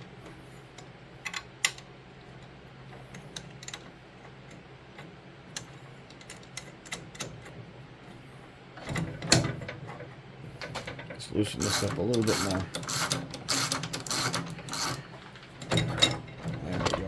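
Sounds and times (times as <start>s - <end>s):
steady low hum: 0.0s - 17.0s
metal parts clicking and tapping: 3.1s - 3.9s, 4.5s - 7.6s, 10.6s - 17.0s.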